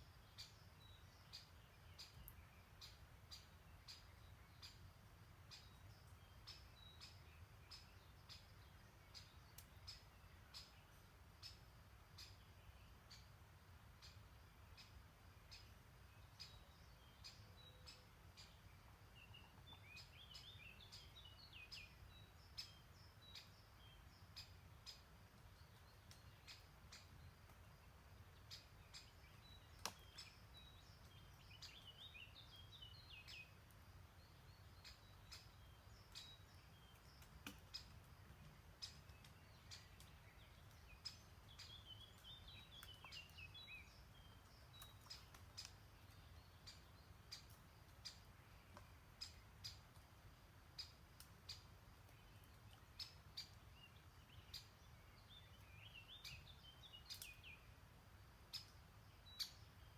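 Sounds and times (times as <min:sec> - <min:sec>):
songbird singing: 0:00.0 - 0:59.9.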